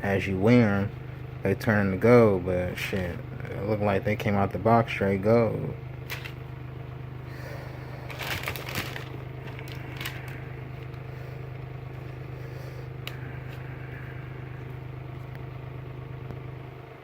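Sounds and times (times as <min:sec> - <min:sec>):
steady low hum: 0:00.0 - 0:17.0
paper crinkling and rustling: 0:08.0 - 0:11.1.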